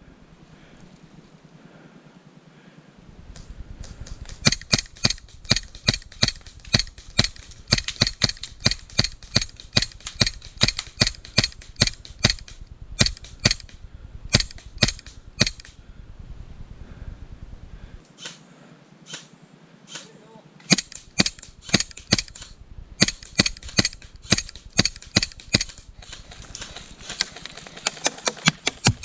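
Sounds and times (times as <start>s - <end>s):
airsoft gun shots: 4.3s - 15.7s, 18.2s - 18.4s, 19.1s - 19.3s, 19.9s - 29.0s.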